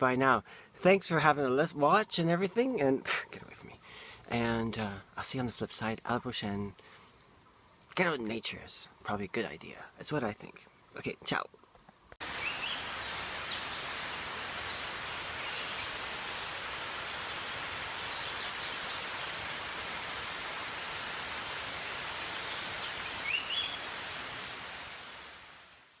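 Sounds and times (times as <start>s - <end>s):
insect buzzing: 0.0s - 26.0s
short rising bird chirps: 22.5s - 23.9s.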